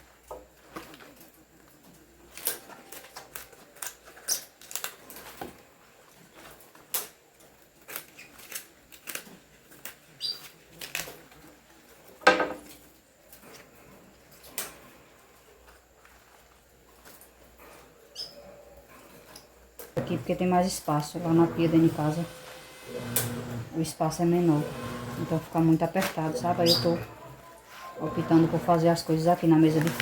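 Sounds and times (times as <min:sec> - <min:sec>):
animal call: 0:26.2 - 0:29.4.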